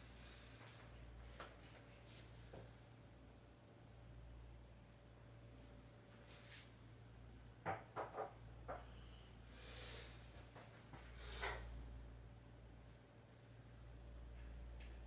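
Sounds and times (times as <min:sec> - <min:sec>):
soft rustles: 0:00.5 - 0:02.6.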